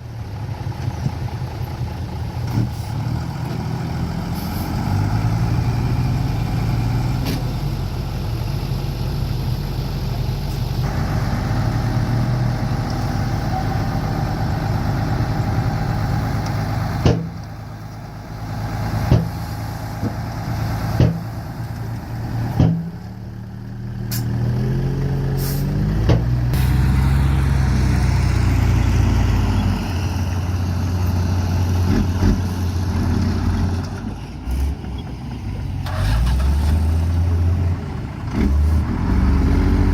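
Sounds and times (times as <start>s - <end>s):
diesel truck engines running: 0.0s - 39.9s
engine revving: 24.1s - 34.9s, 35.8s - 39.9s.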